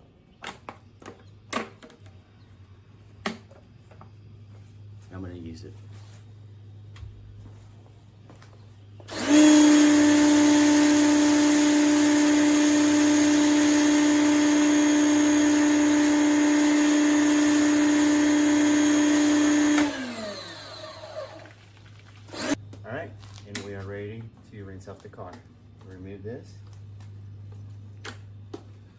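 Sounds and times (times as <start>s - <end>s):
pressure washer motor humming: 9.1s - 22.6s.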